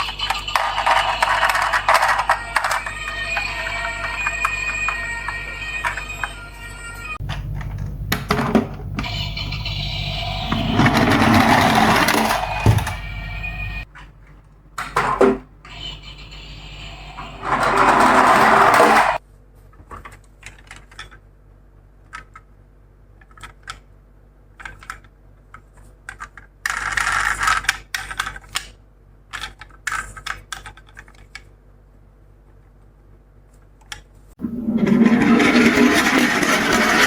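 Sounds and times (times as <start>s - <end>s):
toy cars rolling and rattling: 0.0s - 6.4s, 10.1s - 13.8s, 15.7s - 19.2s, 25.6s - 28.7s, 34.4s - 37.0s
light clicks of toy cars: 23.2s - 23.9s, 24.6s - 31.6s.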